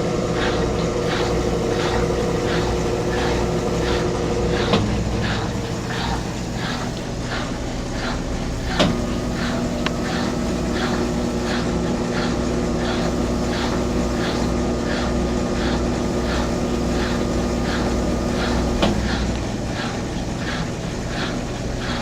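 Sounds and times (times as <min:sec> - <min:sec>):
rhythmic scraping: 0:00.0 - 0:22.0
washing machine motor hum: 0:00.0 - 0:22.0.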